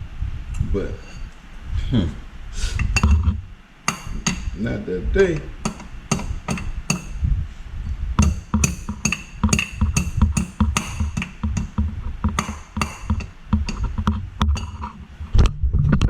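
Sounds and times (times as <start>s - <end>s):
low rumble: 0.0s - 12.4s, 13.1s - 16.0s
sharp metallic knocks: 2.8s - 7.3s, 8.2s - 15.2s.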